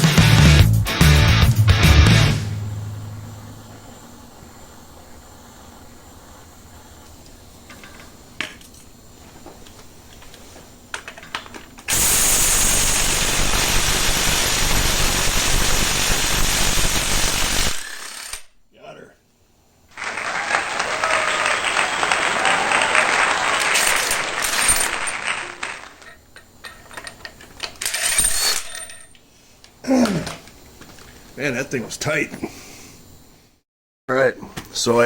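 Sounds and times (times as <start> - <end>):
background music: 0.0 - 3.3
power tool running loudly: 11.9 - 18.4.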